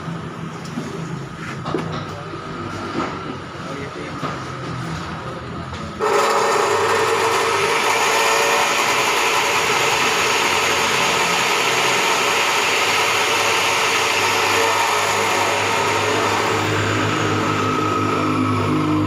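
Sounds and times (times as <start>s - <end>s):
cut-off saw whine: 6.0s - 19.0s.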